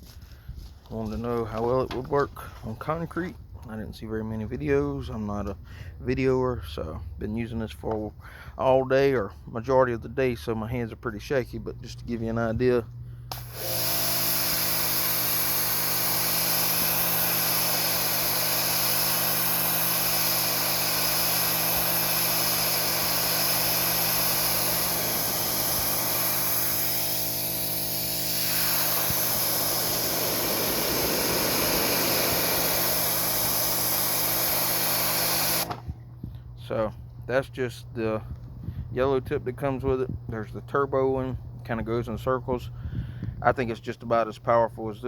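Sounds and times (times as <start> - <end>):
pressure washer pump humming: 12.6 - 36.5
water jet hissing on concrete: 13.4 - 35.8.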